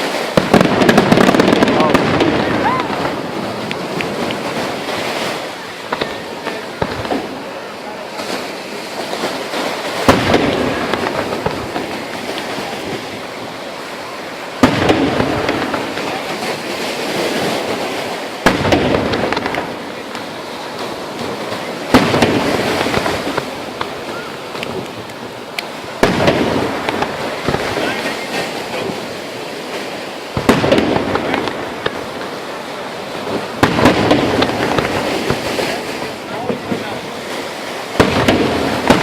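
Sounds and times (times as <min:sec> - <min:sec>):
fireworks bangs: 0:00.0 - 0:39.0
fireworks rumbling crackling tail: 0:00.0 - 0:39.0.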